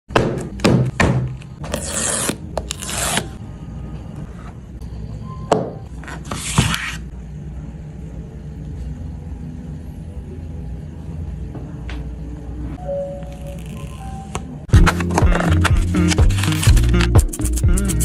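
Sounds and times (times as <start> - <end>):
packaging scraping rubs: 14.8 - 18.0.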